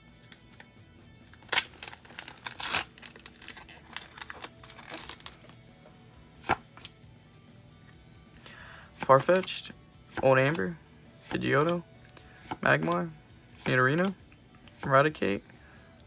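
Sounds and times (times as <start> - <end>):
faint background music: 0.0 - 16.0
foil wrapper tearing and crinkling: 1.2 - 5.5.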